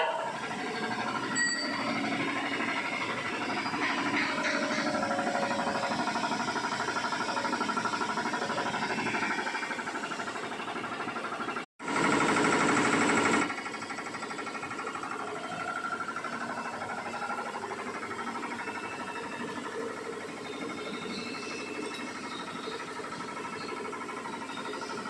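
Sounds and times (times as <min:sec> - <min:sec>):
machinery chattering: 0:00.0 - 0:11.6.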